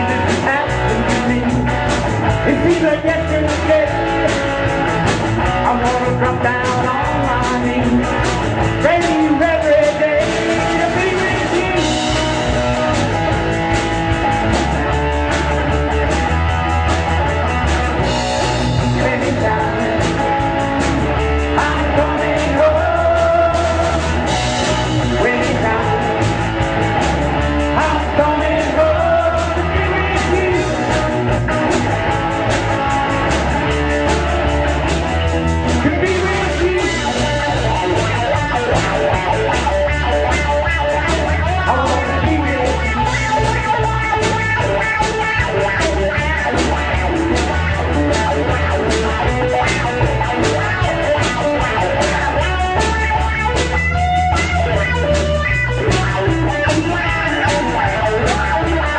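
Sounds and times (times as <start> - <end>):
lead vocal singing: 0.0 - 4.7, 5.5 - 13.4, 18.8 - 33.9, 35.6 - 39.6, 40.3 - 44.1
rock band playing: 0.0 - 58.9.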